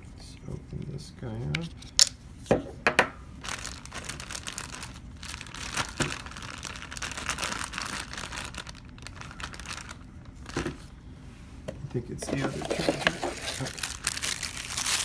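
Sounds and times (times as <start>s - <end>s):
packaging crinkling and rustling: 3.4s - 11.0s, 11.7s - 15.0s.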